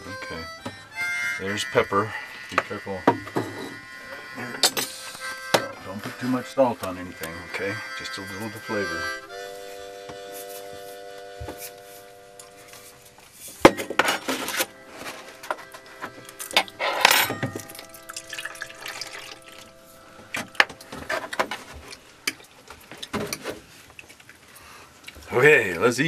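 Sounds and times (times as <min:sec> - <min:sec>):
plates and utensils clinking: 0:03.1 - 0:05.8, 0:13.6 - 0:19.7
rustling or scraping: 0:09.6 - 0:17.4, 0:20.8 - 0:24.6.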